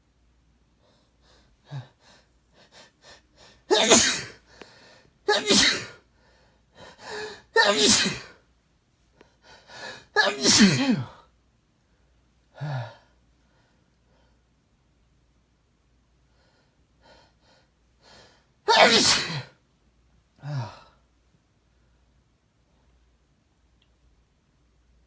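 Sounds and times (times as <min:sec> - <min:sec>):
man sneezing: 0:03.7 - 0:04.4, 0:05.3 - 0:06.0, 0:07.1 - 0:08.4, 0:10.2 - 0:11.2, 0:18.7 - 0:19.5.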